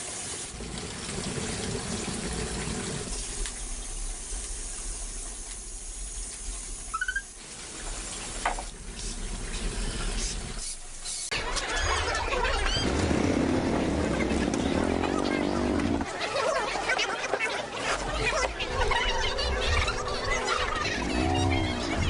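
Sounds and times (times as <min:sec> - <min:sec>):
water running and splashing: 0:00.0 - 0:11.3.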